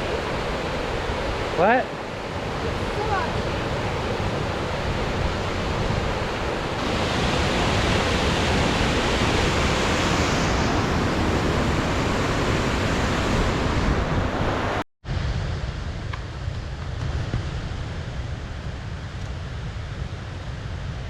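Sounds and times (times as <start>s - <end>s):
creek rushing: 0.0s - 14.8s
wind buffeting microphone: 0.0s - 21.0s.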